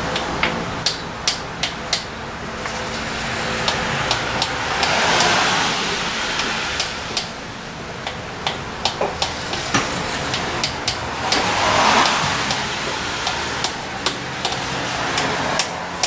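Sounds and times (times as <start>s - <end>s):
steady hiss: 2.8s - 16.0s
hand tools tapping on metal: 8.0s - 12.6s, 13.2s - 16.0s.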